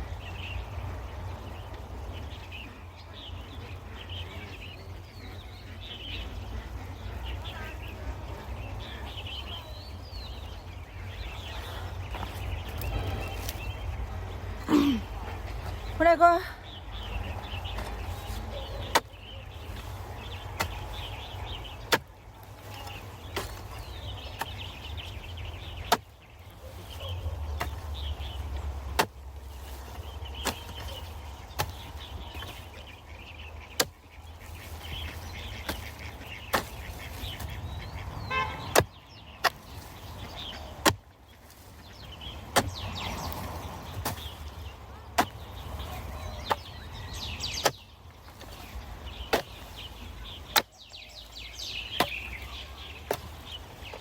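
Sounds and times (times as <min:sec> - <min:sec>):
digging tool chopping into soil: 0:17.7 - 0:26.2, 0:26.8 - 0:54.0.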